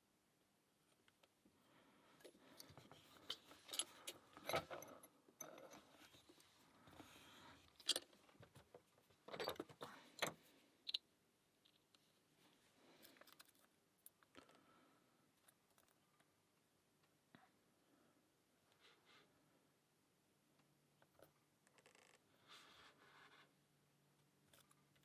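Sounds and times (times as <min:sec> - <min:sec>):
lock picks clicking and scraping: 0:02.6 - 0:06.3, 0:07.6 - 0:08.2, 0:13.0 - 0:14.2, 0:24.5 - 0:25.0.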